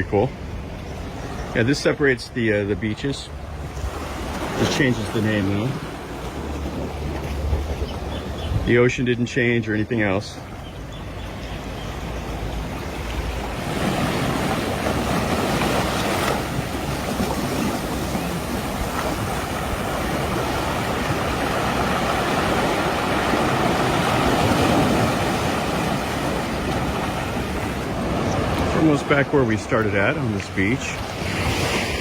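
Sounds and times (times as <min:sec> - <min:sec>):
surf washing onto beach: 0:12.3 - 0:32.0.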